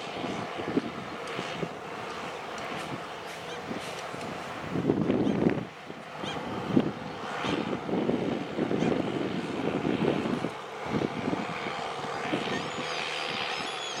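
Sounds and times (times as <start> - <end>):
diesel machinery engine clattering: 0.7 - 7.7
high whine: 10.0 - 14.0
brief squealing tones: 12.5 - 14.0.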